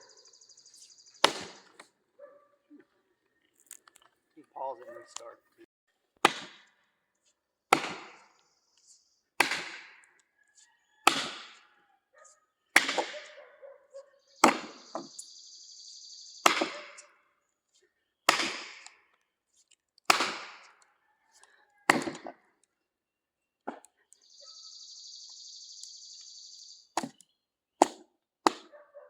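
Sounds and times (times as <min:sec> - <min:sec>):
hammer striking metal wedge: 0:09.4 - 0:09.9.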